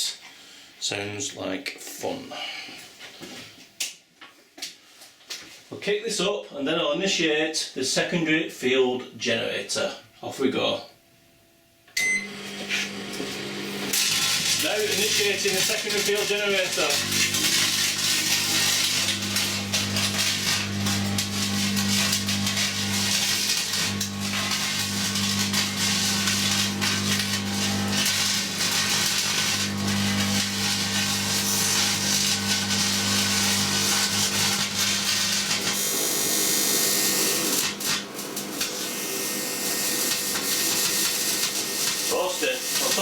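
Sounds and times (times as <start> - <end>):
crackling hiss of arcing: 12.7 - 43.0
transformer hum: 13.4 - 35.7.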